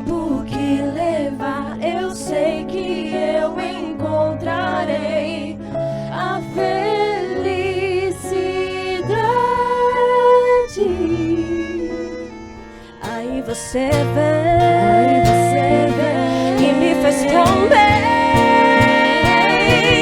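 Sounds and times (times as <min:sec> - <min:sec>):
slow ballad melody: 0:00.0 - 0:20.0
sustained bass notes: 0:13.8 - 0:20.0.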